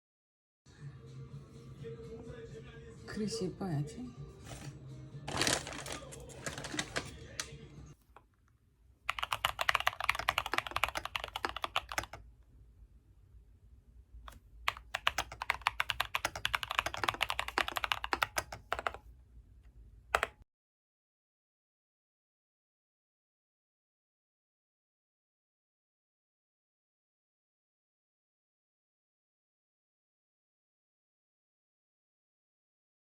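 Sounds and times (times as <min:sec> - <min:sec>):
typing on computer keyboard: 0:09.1 - 0:12.2, 0:14.3 - 0:19.1, 0:20.1 - 0:20.4.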